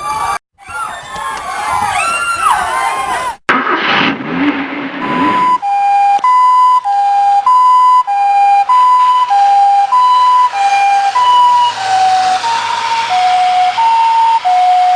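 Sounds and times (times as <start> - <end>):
rushing noise: 3.5 - 5.7
two-tone emergency siren: 5.0 - 14.9.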